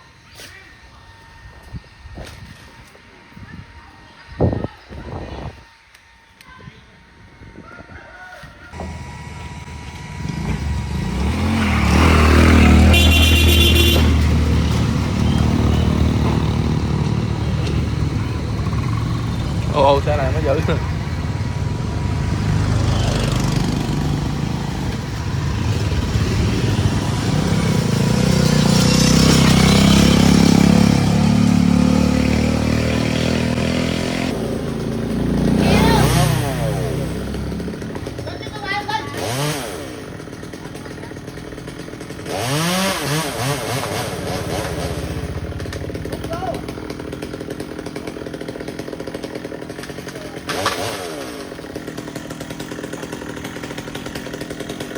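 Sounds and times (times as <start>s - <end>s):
heavy vehicle engine: 8.8s - 54.9s
vehicle sweeping past: 10.3s - 16.6s.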